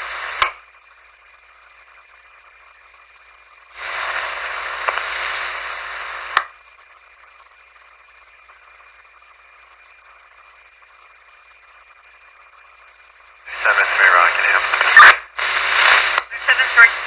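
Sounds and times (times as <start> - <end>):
burst of radio static: 0.0 - 0.5, 3.8 - 6.4, 11.6 - 17.0
radio scanner hiss: 0.0 - 17.0.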